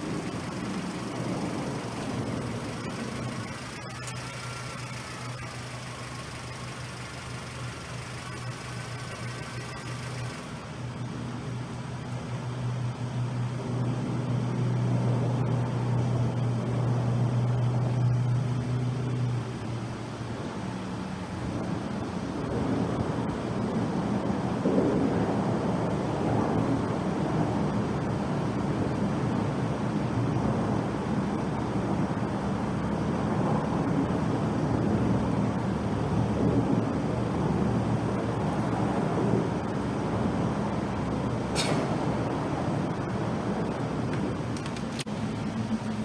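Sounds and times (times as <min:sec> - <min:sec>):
sharp click: 0:41.6 - 0:42.0.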